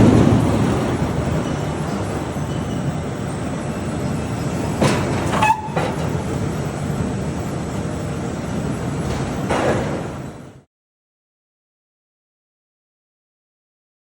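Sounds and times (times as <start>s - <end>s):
heavy farm machinery running: 0.0s - 10.6s.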